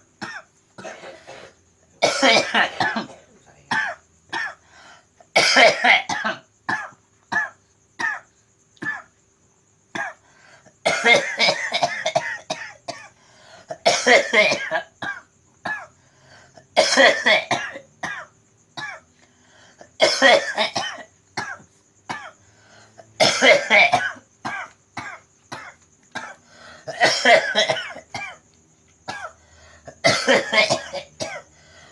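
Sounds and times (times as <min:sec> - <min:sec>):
person coughing: 0:00.2 - 0:04.6, 0:05.4 - 0:08.2, 0:08.8 - 0:09.1, 0:10.8 - 0:13.1, 0:13.7 - 0:15.9, 0:16.7 - 0:19.0, 0:19.9 - 0:22.4, 0:23.1 - 0:28.4, 0:29.1 - 0:31.5.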